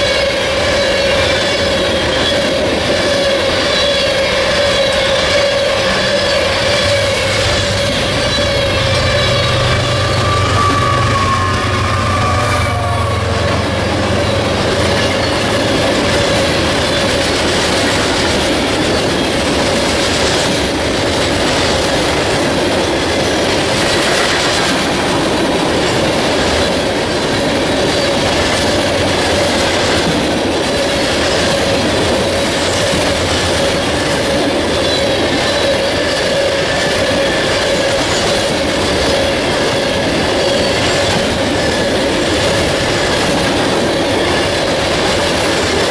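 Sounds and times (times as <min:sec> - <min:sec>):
wheel squeal: 0:00.0 - 0:20.6, 0:30.8 - 0:45.9
clickety-clack over rail joints: 0:00.0 - 0:45.9
train wheels rumbling on rail: 0:00.0 - 0:45.9.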